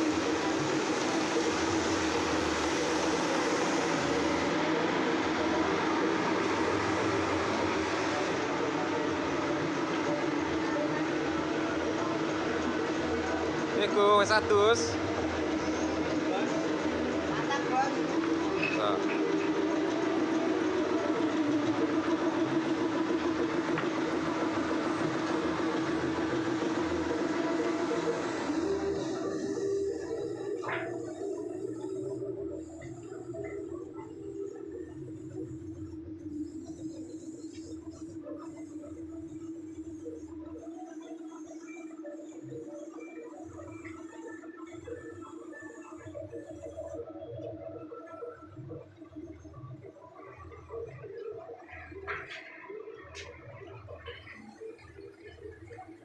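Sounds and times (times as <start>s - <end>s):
woodworking machine running: 0.0s - 42.0s.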